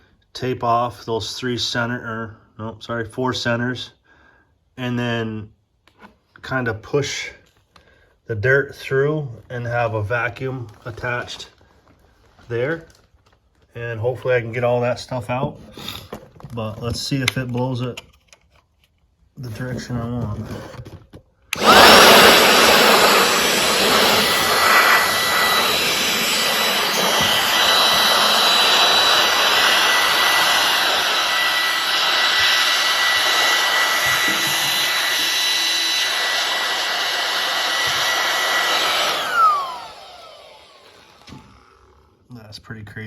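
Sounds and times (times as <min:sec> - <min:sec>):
inflator blowing air with whine: 0:21.6 - 0:41.7.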